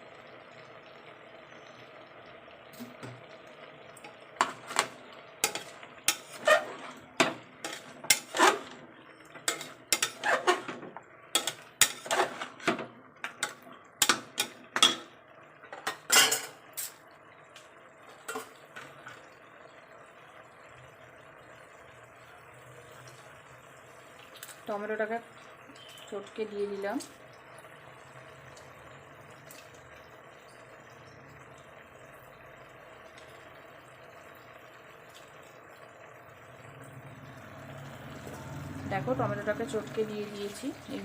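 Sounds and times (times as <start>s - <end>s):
spatula scraping against pot: 4.4s - 12.7s.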